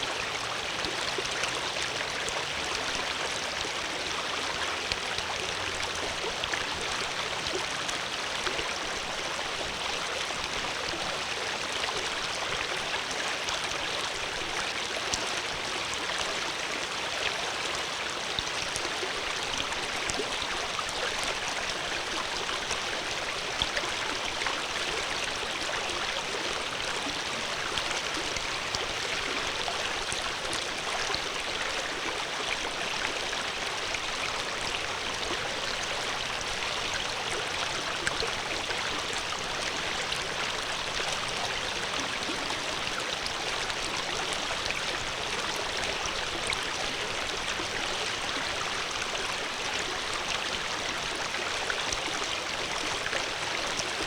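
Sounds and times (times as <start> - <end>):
water flowing over rocks: 0.0 - 54.0
water drips and splashes: 16.9 - 54.0.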